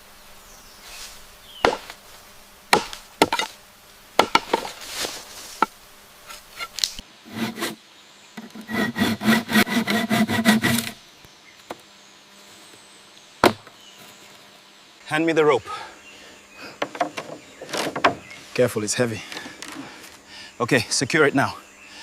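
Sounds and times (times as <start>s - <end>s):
knocks on wood: 4.2s - 4.7s, 16.8s - 18.3s
sawing bamboo: 4.2s - 7.8s, 8.4s - 11.0s.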